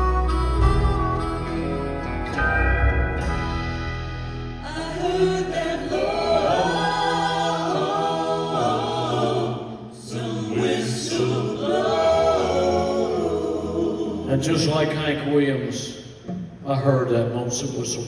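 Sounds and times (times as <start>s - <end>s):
live country music: 0.0s - 9.4s
backing singers holding chords: 0.0s - 14.8s.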